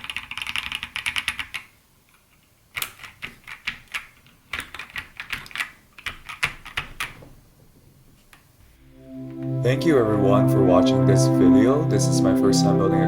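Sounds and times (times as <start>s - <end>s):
mechanical keyboard typing: 0.0s - 1.7s, 2.8s - 7.2s.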